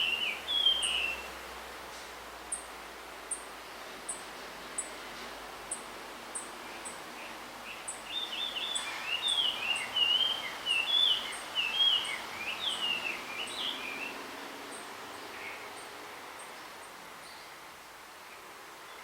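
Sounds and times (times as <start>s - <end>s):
bird warbling whistled song: 8.1s - 14.1s.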